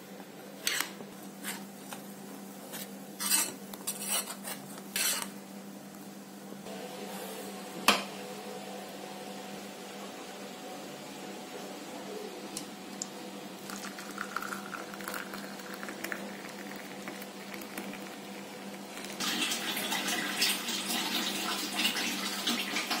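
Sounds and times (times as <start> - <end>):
liquid pouring: 13.6 - 22.7.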